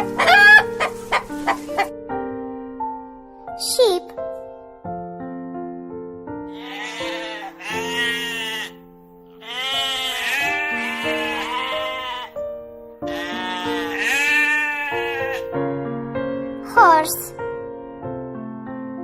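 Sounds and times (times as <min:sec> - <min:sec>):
piano music: 0:00.0 - 0:19.0
sheep bleating: 0:06.5 - 0:08.8, 0:09.4 - 0:12.4, 0:13.1 - 0:15.5.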